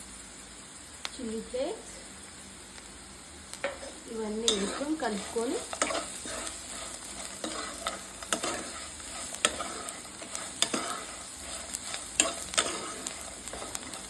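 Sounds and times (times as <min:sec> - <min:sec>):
food sizzling in pan: 0:00.0 - 0:14.0
spoon scraping pan: 0:03.6 - 0:14.0.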